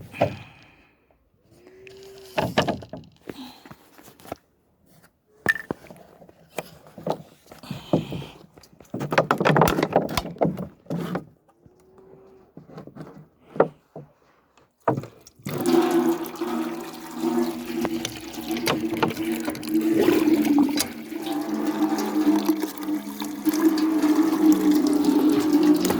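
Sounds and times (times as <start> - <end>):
water gushing into vessel: 15.3 - 25.9
water pouring: 15.3 - 25.9.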